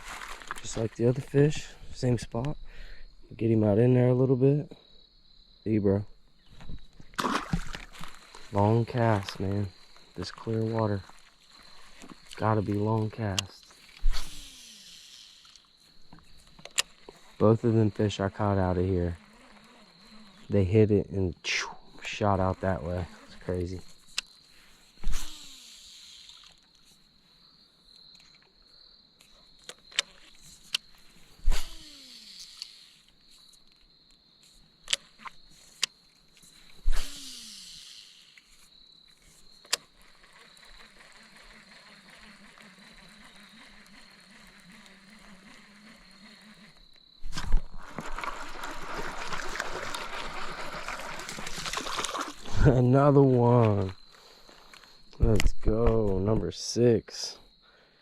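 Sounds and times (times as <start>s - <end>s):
small ticks: 6.5s - 20.6s, 22.0s - 52.5s
fishing line running off spool: 6.6s - 20.9s, 21.5s - 26.9s, 29.8s - 33.6s, 34.5s - 55.0s
fish splashing at water surface: 7.2s - 8.6s, 47.7s - 52.7s.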